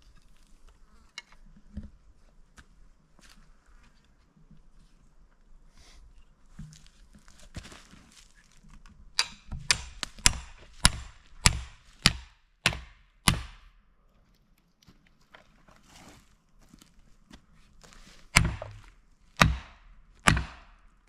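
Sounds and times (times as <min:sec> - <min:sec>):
heavy blows on wood: 0:09.2 - 0:13.6, 0:18.4 - 0:20.8.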